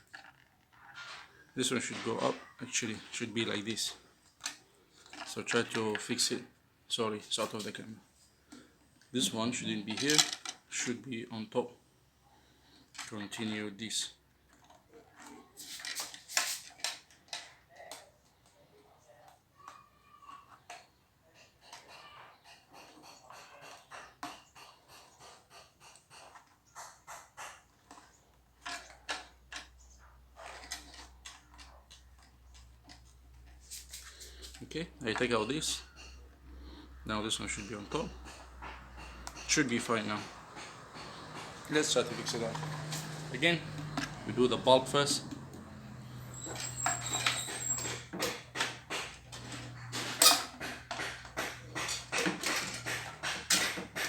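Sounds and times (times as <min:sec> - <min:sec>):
plastic clicks and scratching: 0:00.0 - 0:03.2, 0:04.2 - 0:06.4, 0:14.4 - 0:18.6, 0:19.2 - 0:35.4
plastic parts clicking and scraping: 0:00.0 - 0:11.2, 0:12.6 - 0:18.6, 0:20.4 - 0:54.0.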